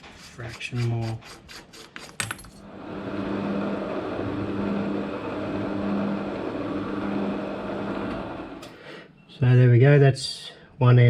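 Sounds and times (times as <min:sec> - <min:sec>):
metal lathe humming: 0:02.6 - 0:08.8.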